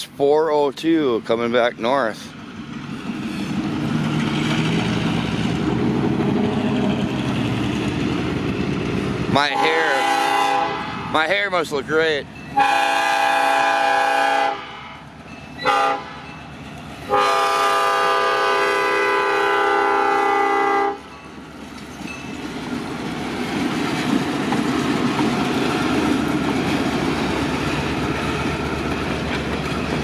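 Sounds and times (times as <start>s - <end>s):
train rumble and wheel clatter: 0.0s - 30.0s
locomotive air horn blasts: 9.5s - 11.1s, 12.6s - 15.0s, 15.6s - 16.2s, 17.1s - 21.1s.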